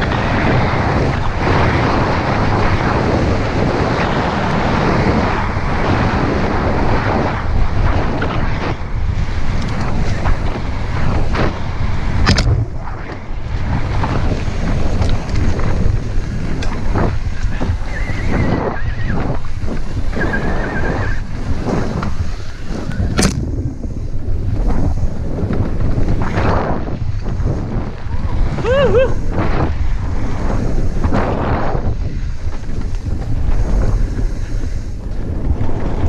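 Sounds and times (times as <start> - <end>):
wind buffeting microphone: 0.0 - 36.0
bike clattering over bumps: 7.8 - 17.9
tyre noise on dirt: 7.9 - 28.6
high squeals: 17.8 - 19.2, 20.1 - 21.3.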